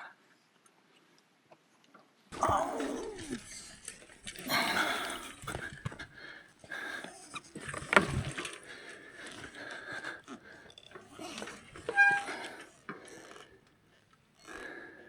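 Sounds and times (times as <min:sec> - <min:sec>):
person grunting: 0:02.4 - 0:03.6, 0:04.4 - 0:05.6
bike knocking and scraping on stones: 0:02.4 - 0:15.0
person breathing hard and straining: 0:02.4 - 0:15.0.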